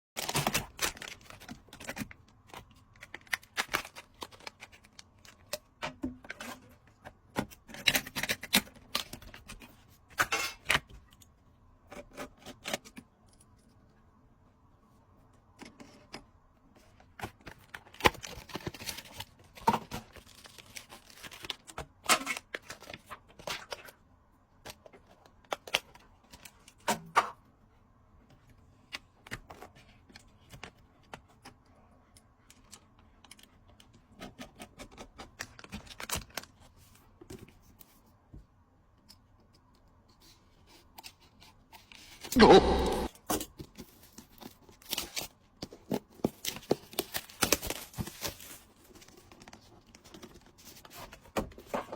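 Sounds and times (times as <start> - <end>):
packaging rustling: 0.2 - 5.5, 43.7 - 51.9.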